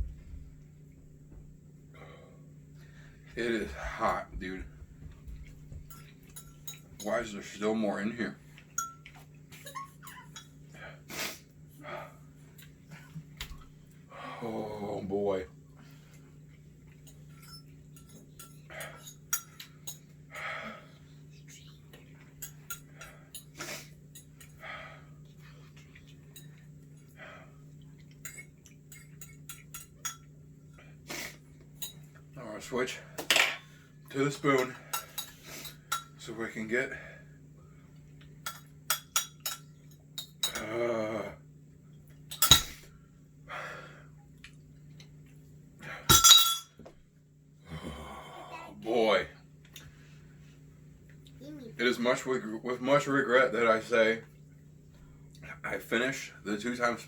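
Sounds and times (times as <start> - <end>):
utensil clinking against dish: 5.7 - 7.6, 8.6 - 10.6, 16.9 - 20.2, 22.2 - 24.6, 28.0 - 30.3, 31.7 - 32.2, 34.5 - 36.2, 38.4 - 40.7, 42.3 - 42.8, 46.1 - 46.9
spoon clinking against bowl: 8.7 - 10.6, 28.3 - 30.3, 38.4 - 40.7, 46.1 - 46.8
person groaning: 47.6 - 48.8.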